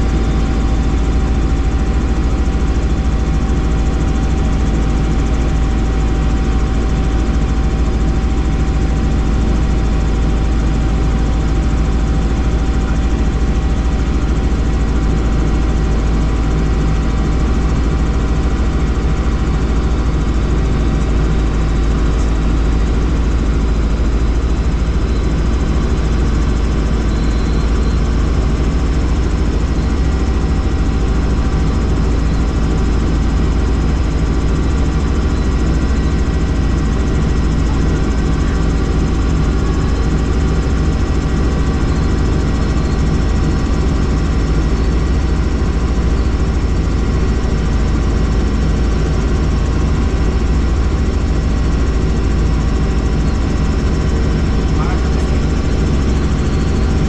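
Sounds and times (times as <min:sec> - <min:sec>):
helicopter engine and rotor: 0:00.0 - 0:57.0
thin constant whine: 0:00.0 - 0:57.0.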